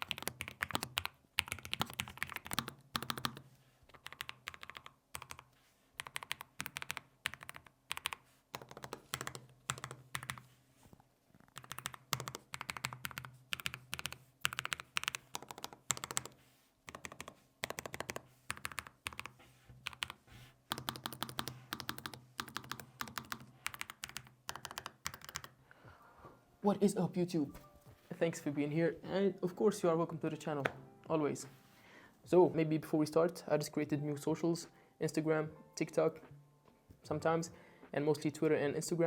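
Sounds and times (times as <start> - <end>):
typing on mechanical keyboard: 0.0 - 10.4, 11.4 - 25.6.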